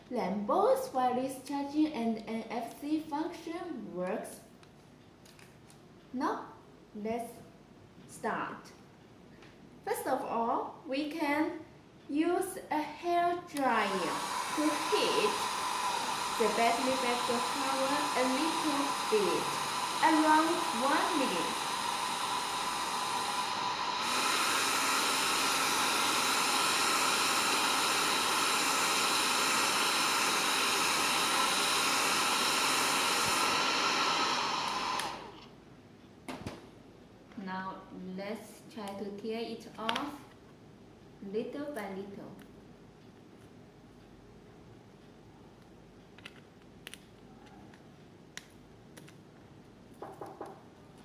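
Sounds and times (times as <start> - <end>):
hair dryer blowing with whine: 13.6 - 35.5.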